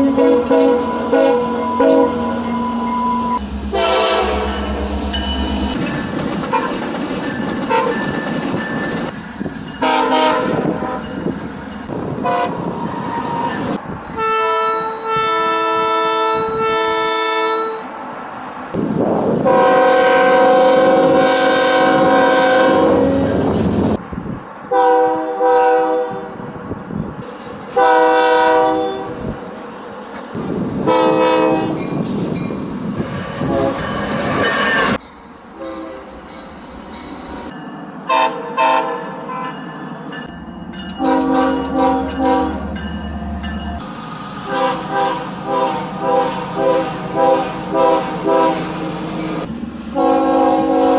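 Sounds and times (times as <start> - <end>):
train air horn chords: 0.0 - 2.4, 3.4 - 5.8, 9.8 - 11.1, 12.2 - 13.6, 14.2 - 17.8, 19.4 - 23.5, 24.7 - 26.3, 27.8 - 29.2, 30.9 - 31.8, 38.1 - 39.4, 41.0 - 42.7, 44.5 - 50.9
train rumble and wheel clatter: 0.0 - 50.9.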